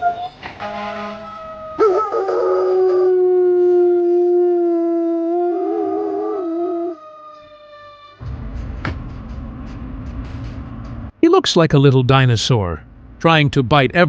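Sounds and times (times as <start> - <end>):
dog howling: 0.0 - 0.4, 1.2 - 8.2.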